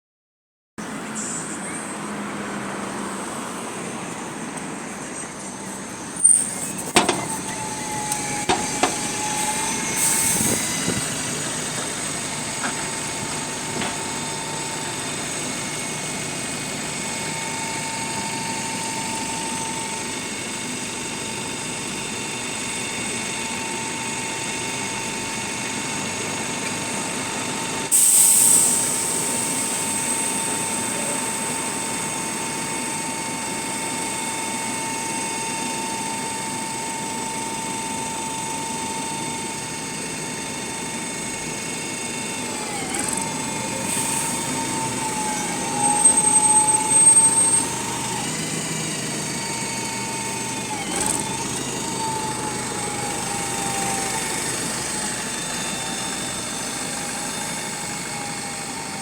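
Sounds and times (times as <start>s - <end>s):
bus engine pulling: 0.8s - 59.0s
faint whining tone: 4.2s - 27.9s, 28.5s - 59.0s
air hiss: 27.9s - 32.0s.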